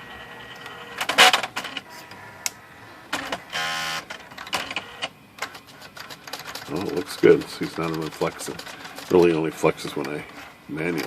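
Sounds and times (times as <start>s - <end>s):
typewriter motor buzz: 3.1s - 9.6s
typewriter mechanism clatter: 5.4s - 10.2s.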